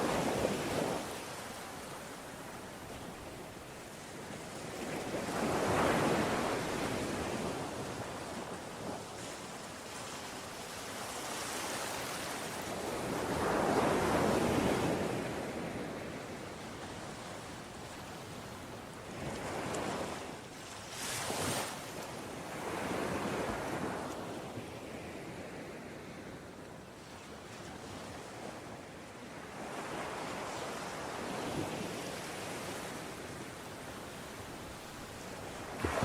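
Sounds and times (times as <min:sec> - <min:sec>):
ocean waves breaking: 0:32.5 - 0:36.0.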